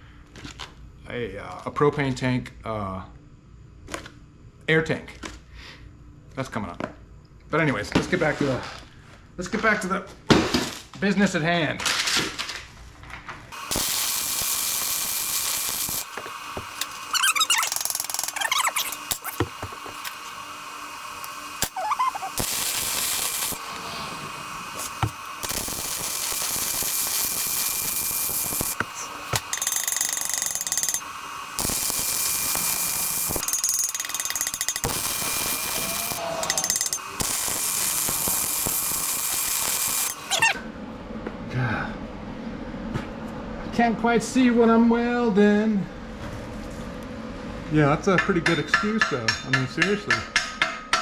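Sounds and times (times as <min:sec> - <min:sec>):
welding arc crackling: 0:13.6 - 0:40.6.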